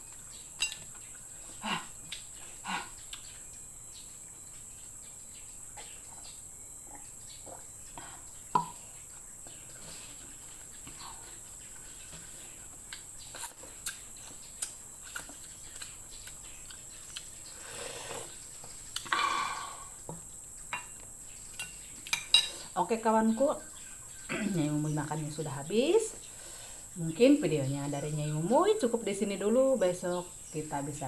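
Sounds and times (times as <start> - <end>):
chewing: 0.0 - 3.6, 5.8 - 19.2.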